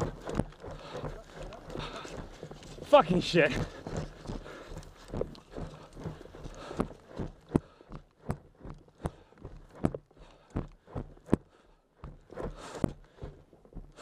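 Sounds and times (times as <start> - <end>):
footsteps on dry ground: 0.0 - 14.0.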